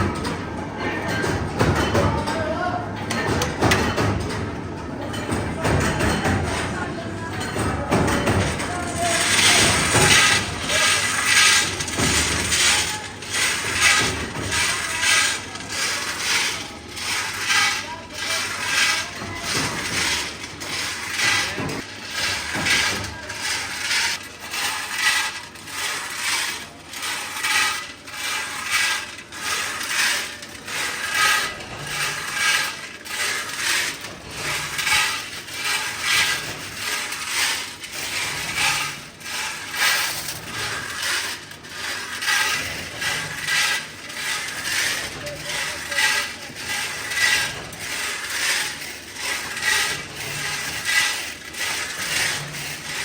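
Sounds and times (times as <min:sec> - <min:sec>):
machinery metallic clatter: 0:00.0 - 0:53.0.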